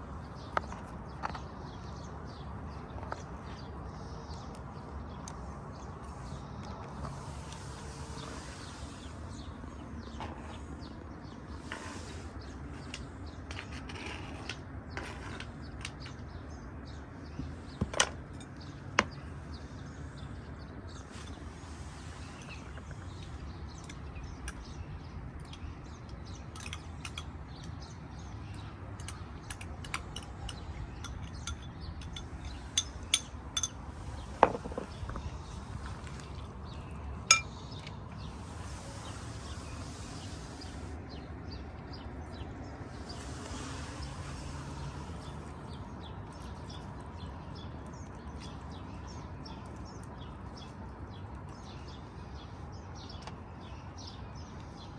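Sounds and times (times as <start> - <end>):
cooking utensils and dishes clinking: 25.4 - 27.8, 29.0 - 33.8, 37.3 - 37.6.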